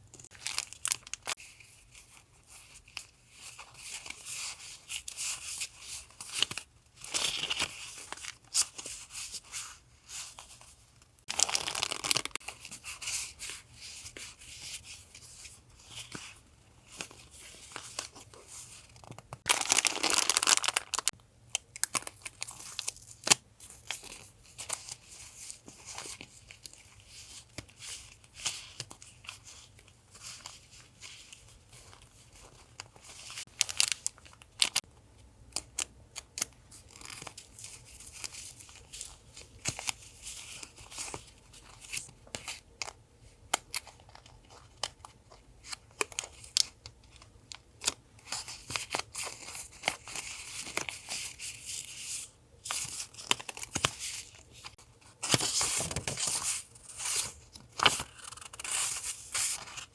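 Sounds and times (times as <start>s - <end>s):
packaging crinkling: 0.2s - 1.4s, 11.3s - 12.4s, 19.5s - 21.1s
packaging tearing: 11.3s - 12.4s, 19.5s - 21.1s.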